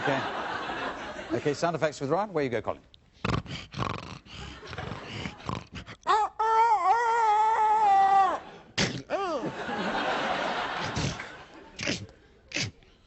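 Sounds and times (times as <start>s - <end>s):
man making breathy vocal sounds: 3.2s - 9.5s, 10.8s - 13.0s.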